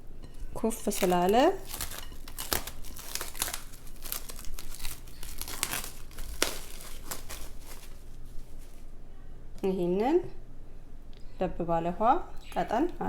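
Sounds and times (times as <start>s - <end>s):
wrapping crinkling: 0.4s - 9.0s.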